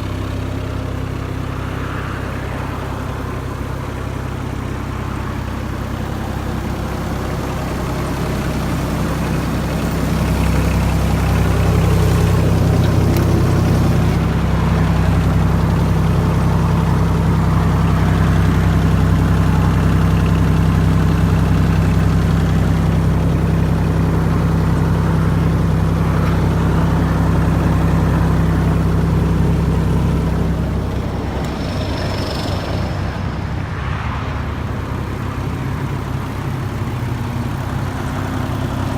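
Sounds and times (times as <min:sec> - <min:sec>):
diesel engine revving: 0:00.0 - 0:38.9.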